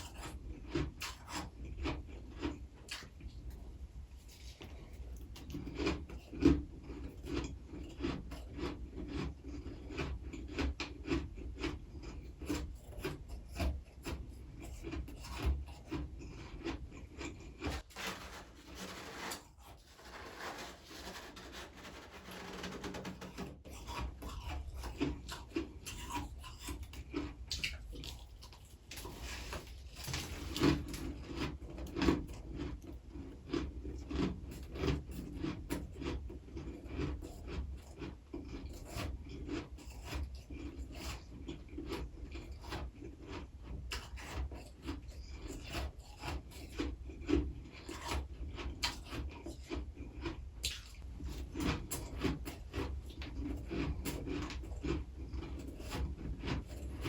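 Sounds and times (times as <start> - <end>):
frost crunching and rasping: 4.2 - 57.0.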